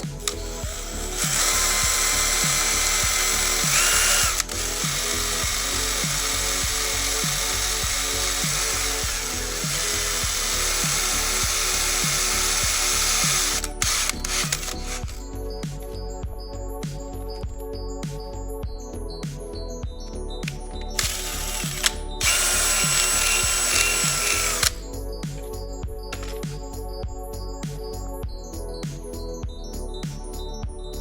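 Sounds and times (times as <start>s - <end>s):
power drill boring into metal: 0.0s - 15.2s, 20.9s - 24.9s, 26.2s - 26.4s
background music with steady beat: 0.0s - 31.0s.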